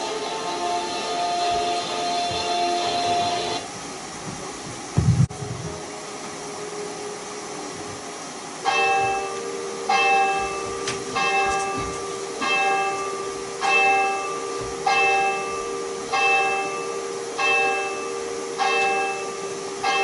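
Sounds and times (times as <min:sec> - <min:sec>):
steady hum: 0:00.0 - 0:20.0
large bell tolling: 0:08.6 - 0:20.0.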